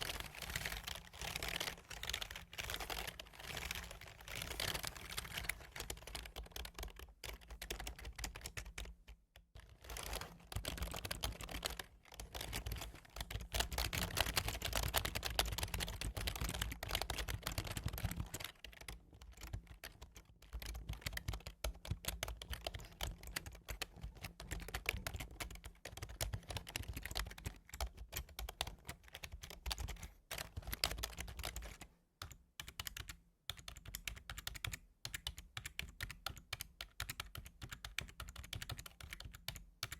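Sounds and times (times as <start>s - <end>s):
typing on keyboard: 0.0s - 39.9s.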